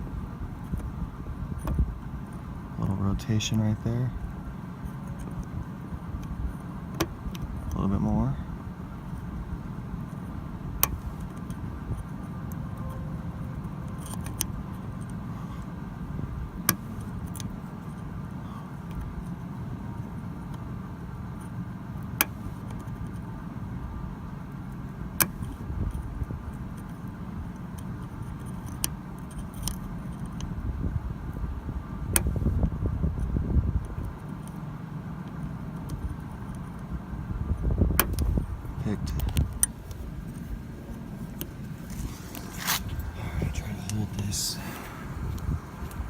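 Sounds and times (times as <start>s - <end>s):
steady low rumble: 36.8s - 46.0s
handling noise: 38.0s - 46.0s.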